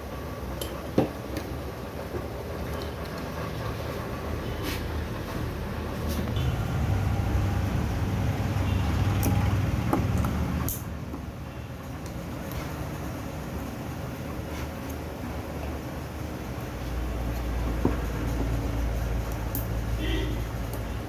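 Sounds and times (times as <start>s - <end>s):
vehicle engine rumble: 2.2s - 21.0s
small metal parts clicking: 19.2s - 19.9s.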